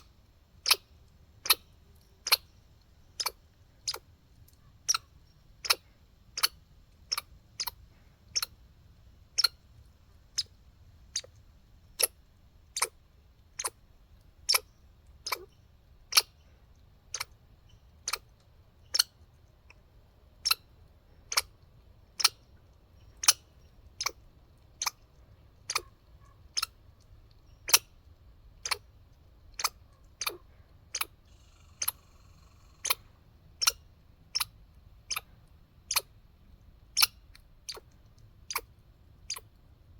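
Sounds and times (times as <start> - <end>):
squirrel gnawing clicks: 0.6 - 2.5, 3.2 - 5.0, 25.6 - 31.2, 32.8 - 33.0, 33.6 - 36.1.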